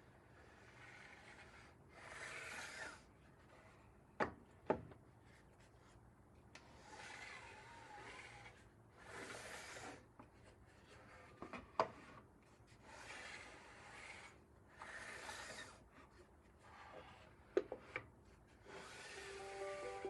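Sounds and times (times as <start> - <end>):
wood rubbed by hand: 18.6 - 20.0.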